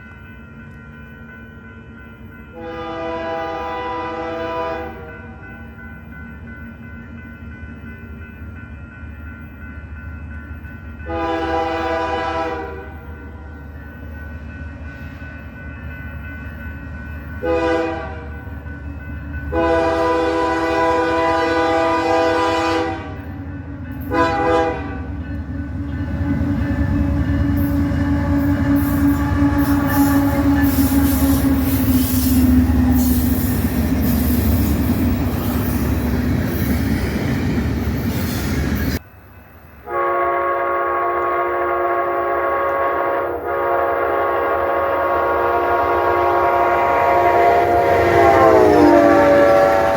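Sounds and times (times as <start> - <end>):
locomotive air horn: 2.5 - 5.4, 11.1 - 13.4, 17.4 - 18.3, 19.5 - 23.3, 24.0 - 25.2, 26.2 - 33.4, 39.8 - 49.9
train wheels clattering: 23.3 - 39.0.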